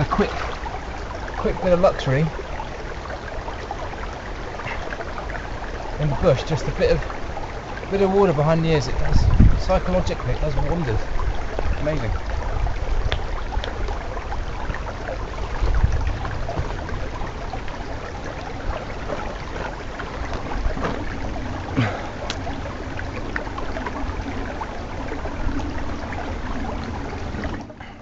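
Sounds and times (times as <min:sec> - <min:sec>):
stream running over its bed: 0:00.0 - 0:28.0
low rumble: 0:09.0 - 0:09.8.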